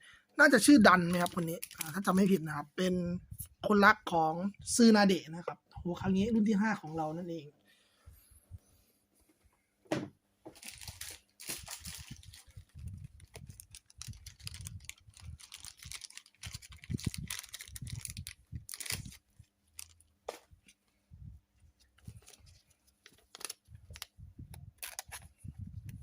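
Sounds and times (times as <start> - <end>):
plastic packaging crinkling: 0.9 - 2.4, 10.5 - 20.2, 22.0 - 24.1, 24.8 - 25.2.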